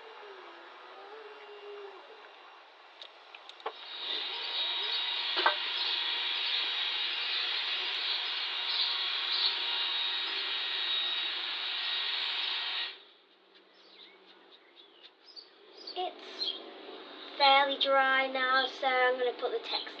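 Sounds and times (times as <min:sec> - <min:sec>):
hot-air dryer running: 0:03.7 - 0:13.0.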